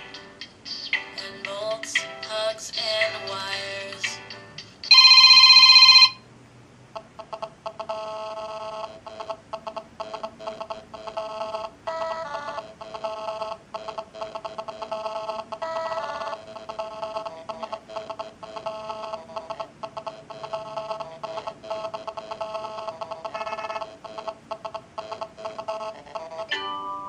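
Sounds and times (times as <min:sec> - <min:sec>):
smartphone ringtones: 0:04.3 - 0:06.2, 0:10.0 - 0:27.0
loud steady electronic tone: 0:07.8 - 0:27.0.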